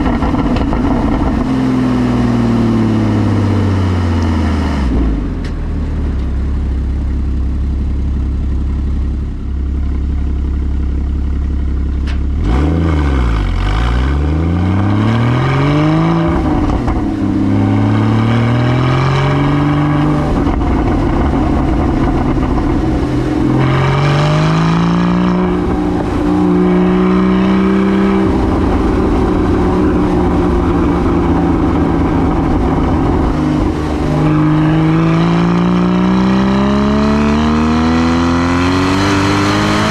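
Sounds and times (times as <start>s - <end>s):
car engine accelerating: 0.0s - 39.9s.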